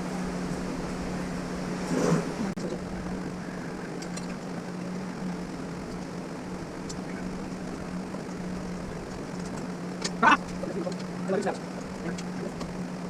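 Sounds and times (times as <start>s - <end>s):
low mechanical hum: 0.0s - 13.0s
faint clicks: 6.8s - 7.2s.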